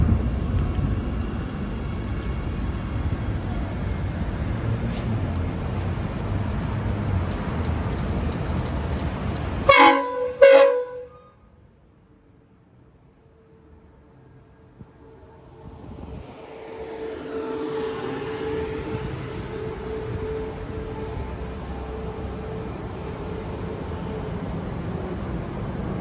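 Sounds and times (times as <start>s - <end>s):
train horn blasts: 9.6s - 11.5s, 17.3s - 25.0s.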